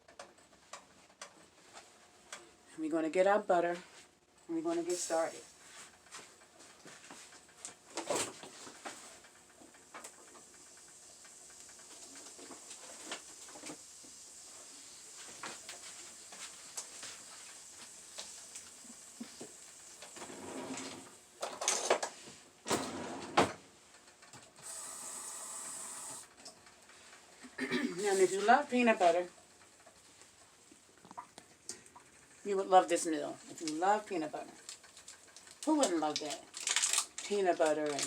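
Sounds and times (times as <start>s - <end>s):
water hissing in frying pan: 10.3s - 20.2s, 24.6s - 26.2s.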